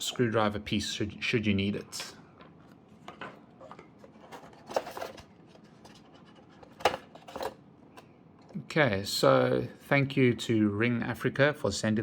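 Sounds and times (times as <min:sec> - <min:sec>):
objects scraping and clicking: 0:03.1 - 0:07.6.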